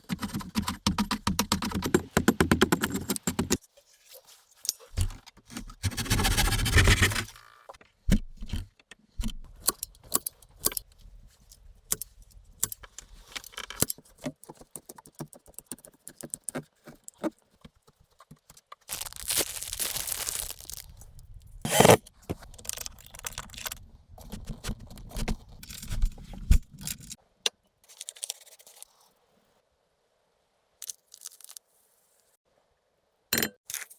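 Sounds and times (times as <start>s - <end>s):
rustling or scraping: 3.6s - 7.8s, 21.7s - 22.8s.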